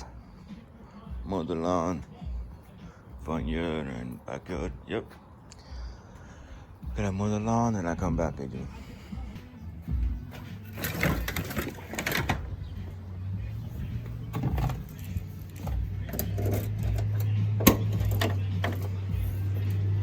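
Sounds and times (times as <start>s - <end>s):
engine running with low hum: 8.6s - 20.0s.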